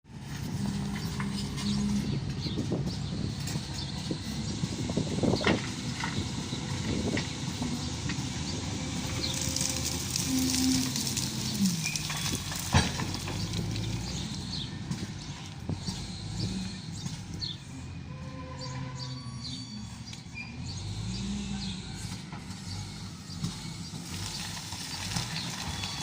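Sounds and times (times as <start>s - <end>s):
diesel engine running: 0.1s - 18.5s, 19.3s - 26.0s
knocks and clanks: 5.0s - 8.3s, 11.9s - 17.5s.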